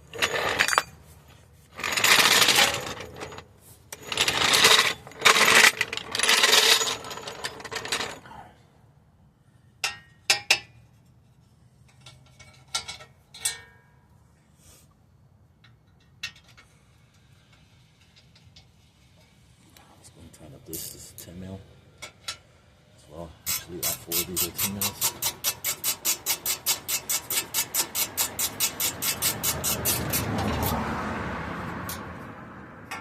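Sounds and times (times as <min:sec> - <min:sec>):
power tool rattling: 0:00.0 - 0:00.9, 0:01.8 - 0:03.4, 0:04.0 - 0:08.2
metal tools clinking: 0:00.0 - 0:01.0.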